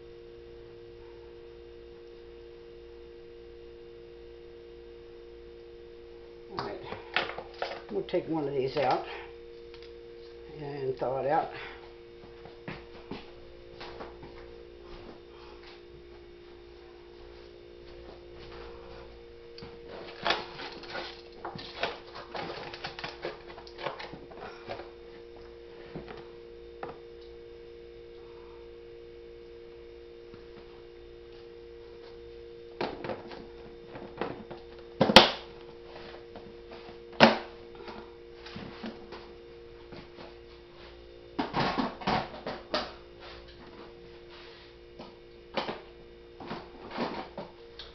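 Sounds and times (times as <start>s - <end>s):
steady hum: 0.0s - 47.9s
plastic wrap rustling: 19.9s - 24.2s.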